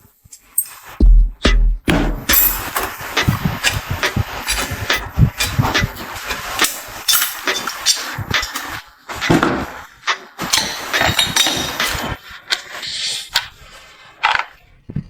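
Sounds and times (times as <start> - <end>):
hand tools knocking on metal: 0.4 - 8.8, 10.6 - 12.1.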